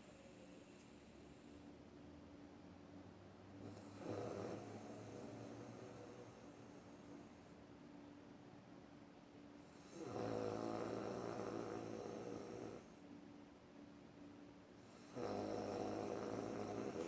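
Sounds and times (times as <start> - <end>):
woman snoring: 3.6 - 6.8, 9.7 - 12.9, 14.9 - 17.0.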